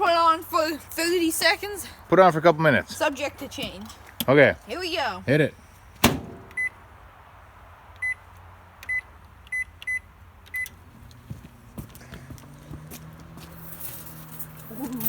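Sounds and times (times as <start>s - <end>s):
microwave keypad beeps: 6.5s - 6.7s.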